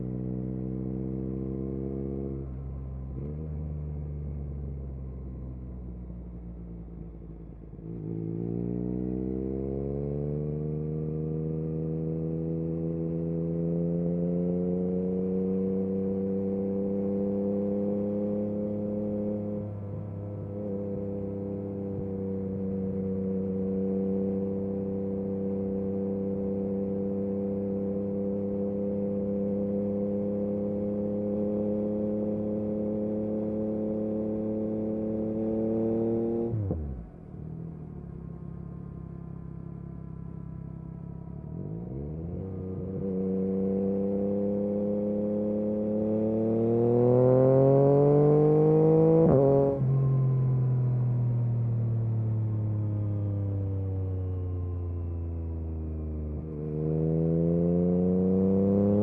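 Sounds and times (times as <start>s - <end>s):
motorcycle engine revving: 7.8s - 50.2s, 55.8s - 59.0s.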